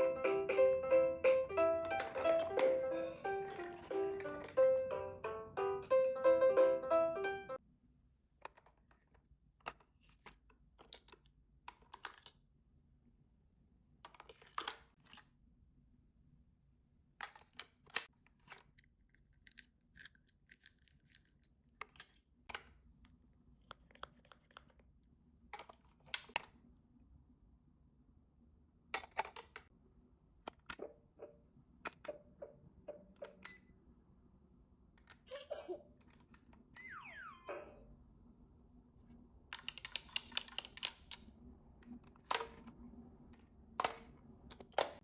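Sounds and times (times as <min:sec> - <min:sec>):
short falling tone: 0:36.8 - 0:37.8
toy cars clicking and clattering: 0:39.5 - 0:41.2.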